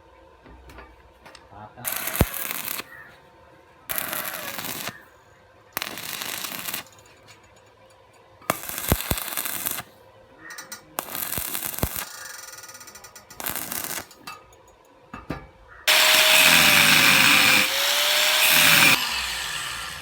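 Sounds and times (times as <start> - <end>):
harsh crackling metalworking bursts: 1.8 - 3.0, 3.9 - 5.1, 5.8 - 7.3, 8.5 - 9.9, 11.0 - 14.3, 15.9 - 20.0.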